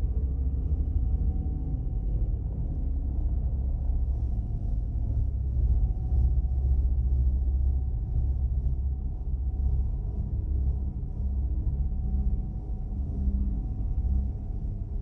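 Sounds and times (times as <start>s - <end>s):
deep low drone: 0.0s - 15.0s.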